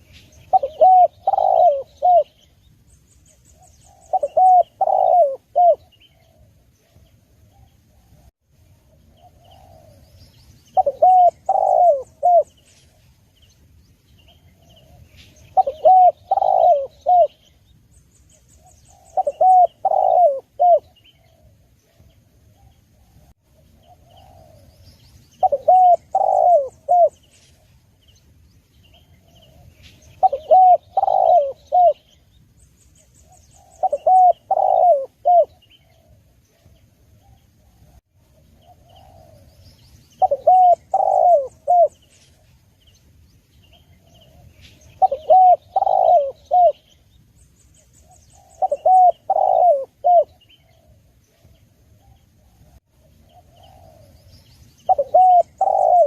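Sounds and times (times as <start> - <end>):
small birds chirping: 0.0 - 56.0
dove cooing: 0.3 - 2.5, 3.5 - 8.3, 9.1 - 12.6, 14.3 - 17.6, 18.6 - 27.3, 28.9 - 32.2, 33.2 - 42.1, 43.7 - 47.0, 48.0 - 56.0.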